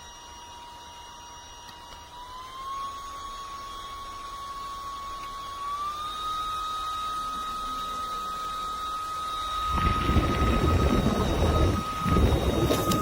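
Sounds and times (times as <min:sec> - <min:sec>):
handheld fan motor whining: 0:00.0 - 0:13.0
rushing air: 0:09.7 - 0:13.0.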